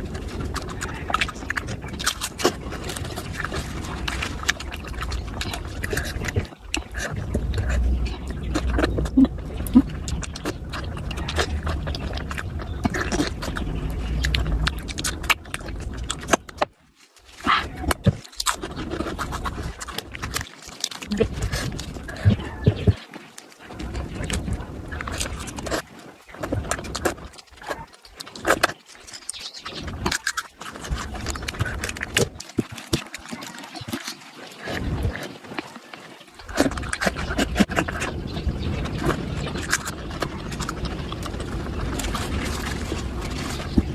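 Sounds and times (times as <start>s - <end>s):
steady low hum: 0.0s - 16.7s
quick clicks and crackles: 0.0s - 43.9s
wet chewing and smacking: 0.0s - 43.9s.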